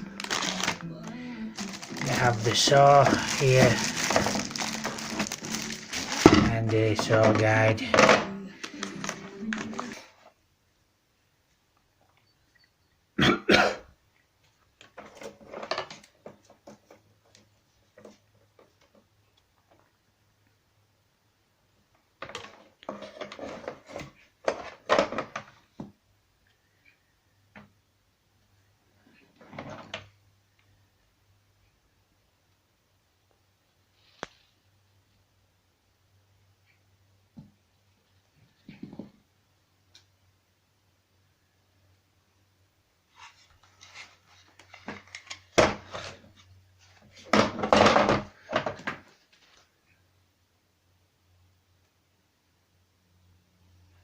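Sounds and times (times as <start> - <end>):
plastic tool box rustling and knocking: 1.6 - 8.3, 22.2 - 26.0, 47.1 - 49.2.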